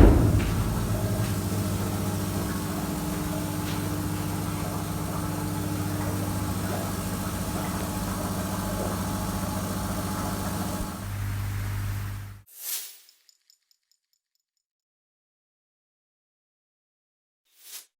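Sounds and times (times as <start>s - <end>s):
engine humming steadily: 0.0s - 12.4s.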